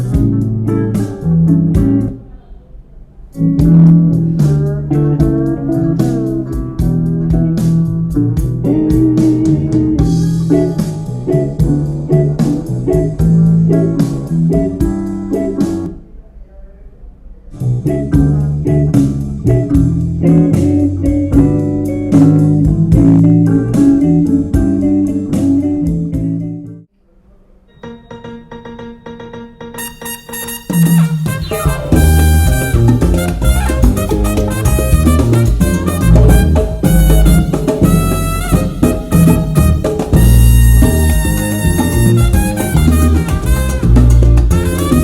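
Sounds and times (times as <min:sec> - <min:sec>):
blues-rock song on speaker: 0:00.0 - 0:02.2, 0:03.4 - 0:16.0, 0:17.8 - 0:26.8.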